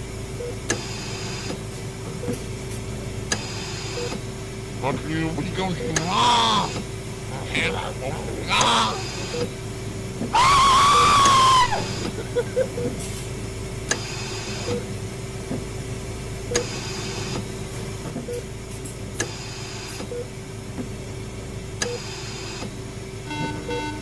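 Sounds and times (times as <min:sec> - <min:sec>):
steady electrical hum: 0:00.0 - 0:24.0.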